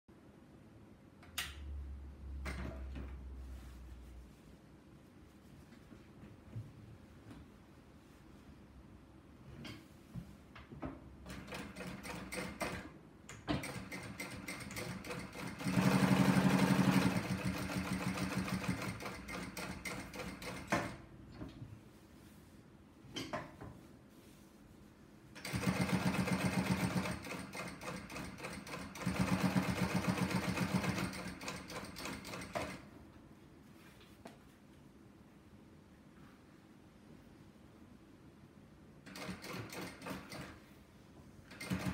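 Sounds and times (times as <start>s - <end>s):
sewing machine stitching leather: 11.2s - 21.0s, 25.4s - 32.9s, 39.0s - 40.7s, 41.5s - 41.9s.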